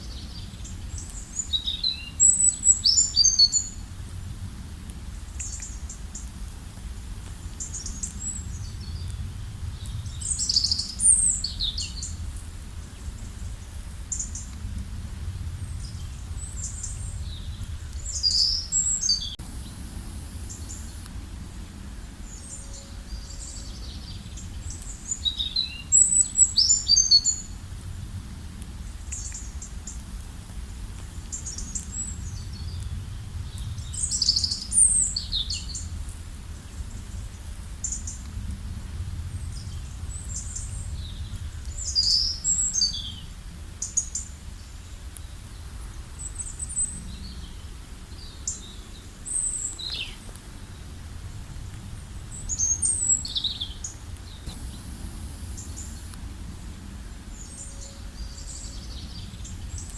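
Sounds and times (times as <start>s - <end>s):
small birds chirping: 0.0s - 3.9s, 5.2s - 6.4s, 7.5s - 12.2s, 15.4s - 27.6s, 31.2s - 36.0s, 39.4s - 51.0s, 52.3s - 59.9s
low background rumble: 0.0s - 59.9s.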